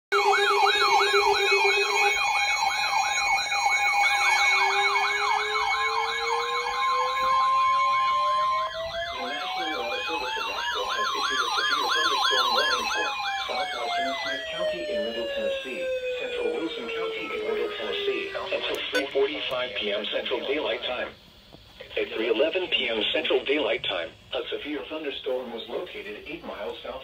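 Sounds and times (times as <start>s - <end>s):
siren wail: 0.1s - 20.9s
electronic siren yelp: 0.1s - 21.0s
steady alert tone: 9.2s - 19.4s.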